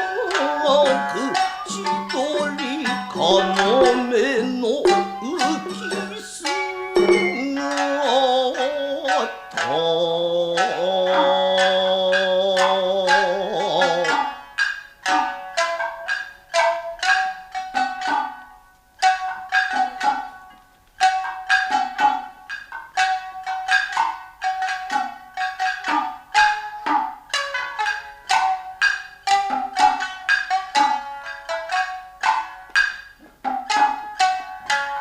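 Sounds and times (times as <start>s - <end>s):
person singing a wavering note: 0.0s - 14.4s, 15.1s - 15.5s, 17.8s - 18.4s
shamisen plucking: 0.0s - 35.0s.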